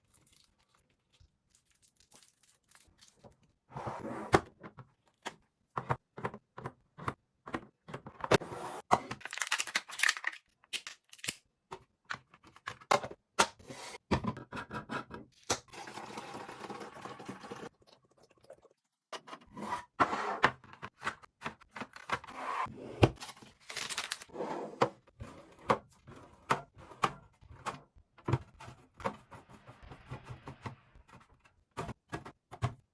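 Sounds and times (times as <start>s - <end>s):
plastic crinkling and tearing: 0.0s - 3.4s, 9.1s - 11.4s, 23.2s - 24.3s.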